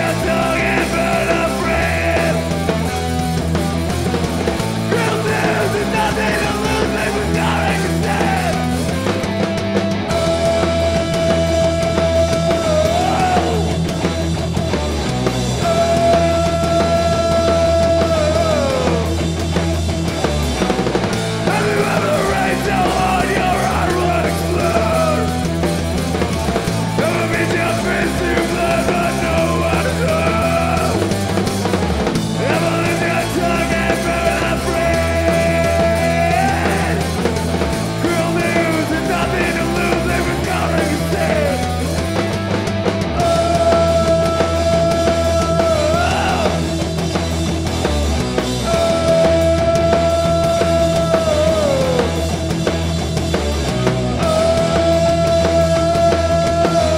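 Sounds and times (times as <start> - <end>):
singer yelling: 0.0 - 2.8, 4.8 - 9.0, 10.0 - 13.9, 15.6 - 19.2, 21.4 - 25.6, 26.8 - 31.5, 32.2 - 42.4, 43.0 - 46.9, 48.5 - 52.4, 54.0 - 56.9
rock band playing live: 0.0 - 56.9.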